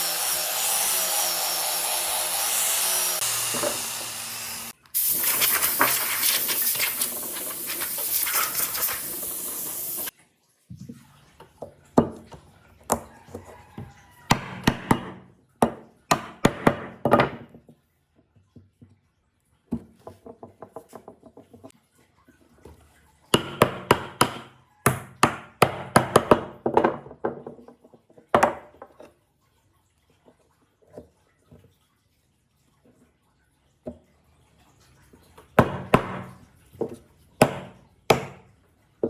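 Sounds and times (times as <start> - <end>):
hammering on wood: 14.3 - 17.4, 23.4 - 26.9, 35.6 - 36.4, 37.4 - 38.4.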